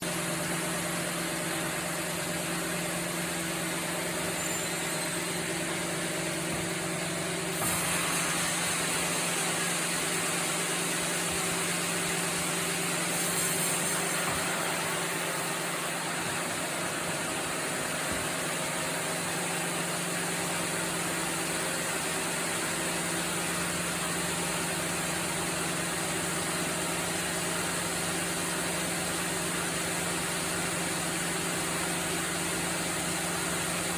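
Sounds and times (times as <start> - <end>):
sawmill machinery humming: 0.0 - 33.9
loud hiss: 4.5 - 19.6.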